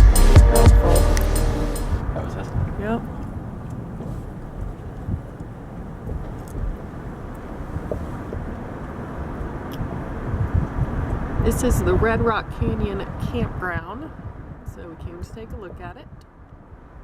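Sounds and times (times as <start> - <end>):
car road and engine rumble: 1.9 - 15.0.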